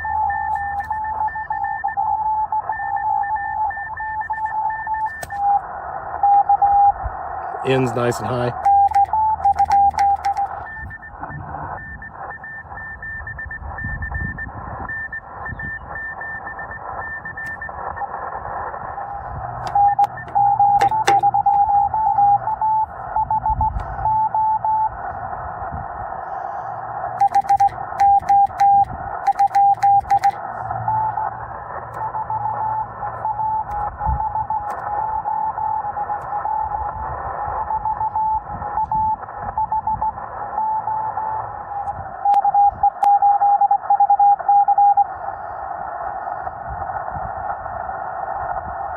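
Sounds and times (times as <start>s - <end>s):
morse code tones: 0.0s - 25.1s, 27.0s - 45.2s
radio band hiss: 3.8s - 43.0s, 45.0s - 48.9s
sharp keying clicks: 8.6s - 10.5s, 27.2s - 30.4s.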